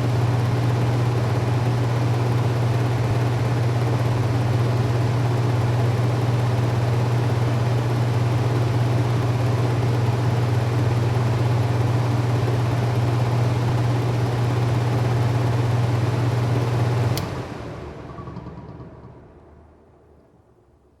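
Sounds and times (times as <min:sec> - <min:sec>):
range hood fan running: 0:00.0 - 0:19.9
switch click: 0:17.1 - 0:17.4.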